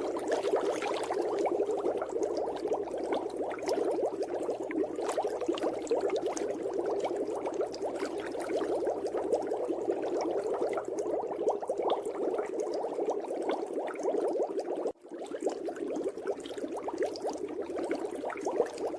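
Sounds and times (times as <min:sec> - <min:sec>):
water bubbling: 0:00.0 - 0:18.9.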